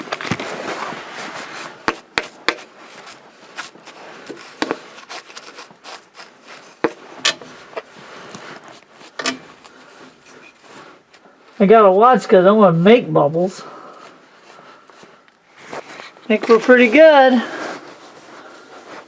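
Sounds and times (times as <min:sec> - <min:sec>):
soft rubbing and scraping: 0:00.0 - 0:19.0
sharp handling clicks and knocks: 0:06.7 - 0:11.2.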